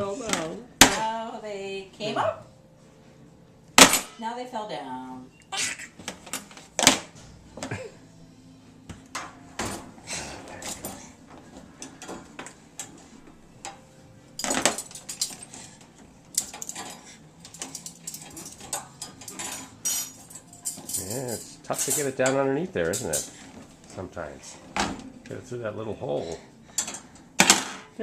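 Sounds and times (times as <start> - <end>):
metal spoons clattering: 13.6 - 23.5, 26.7 - 27.9.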